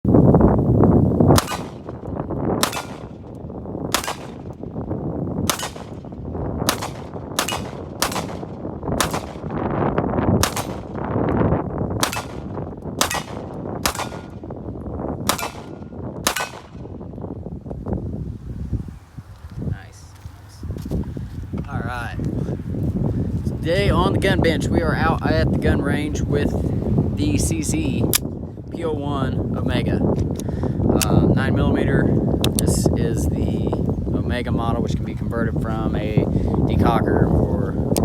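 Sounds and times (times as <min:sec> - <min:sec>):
wind rumble on microphone: 0:00.0 - 0:38.0
pistol shots: 0:01.4 - 0:03.3, 0:03.9 - 0:04.7, 0:05.4 - 0:09.6, 0:10.4 - 0:11.1, 0:12.0 - 0:14.5, 0:15.2 - 0:17.0.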